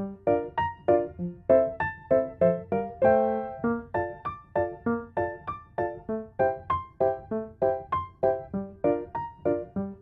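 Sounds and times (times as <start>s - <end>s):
light keyboard melody: 0.0s - 10.0s.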